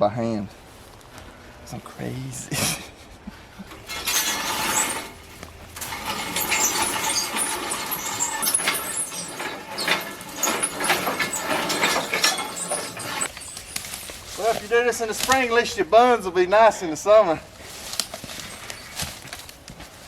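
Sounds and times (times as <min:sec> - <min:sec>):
short squeaks: 0:03.7 - 0:14.5, 0:18.3 - 0:19.2
wire being unwound rustling: 0:03.7 - 0:15.7, 0:17.5 - 0:20.0.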